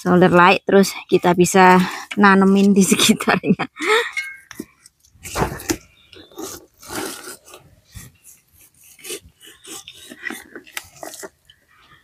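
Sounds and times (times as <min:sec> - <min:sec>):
garden plants rustling: 0:04.2 - 0:12.0.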